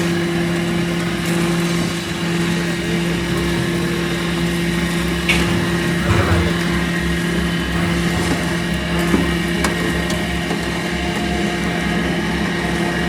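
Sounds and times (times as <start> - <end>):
grinder machine droning: 2.1 - 10.0.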